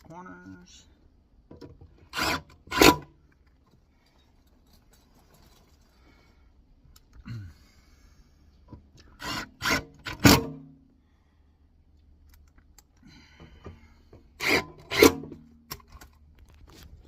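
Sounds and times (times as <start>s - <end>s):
power driver driving screws: 14.4s - 15.3s.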